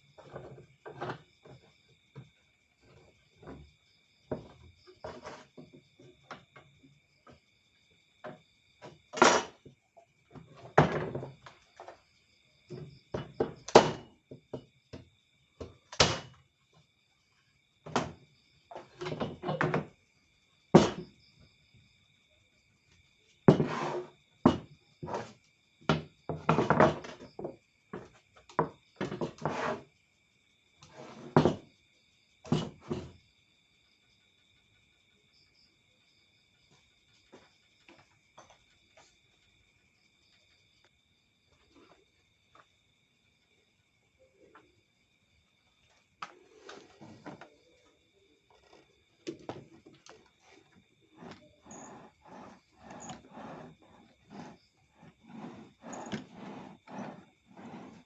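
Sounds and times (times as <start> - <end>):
crickets chirring: 0.0 - 58.0.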